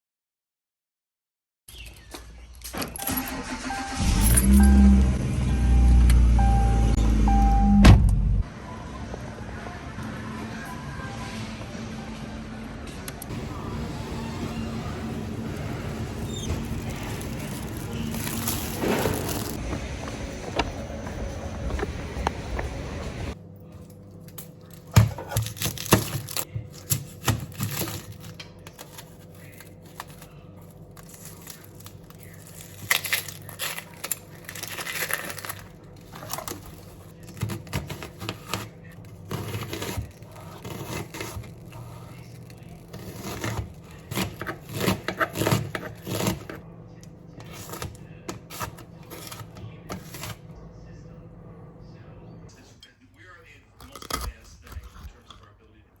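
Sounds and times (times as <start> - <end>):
packaging crinkling and scraping: 15.0 - 23.4, 24.2 - 46.6, 47.4 - 50.4.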